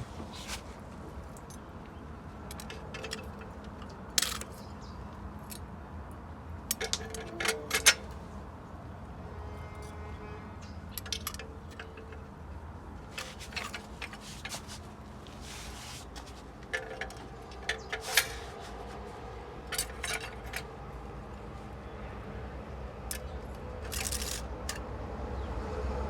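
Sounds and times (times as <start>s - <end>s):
metal parts clinking together: 1.3s - 5.7s, 6.7s - 8.2s, 10.9s - 12.4s, 13.0s - 21.4s, 23.1s - 24.8s.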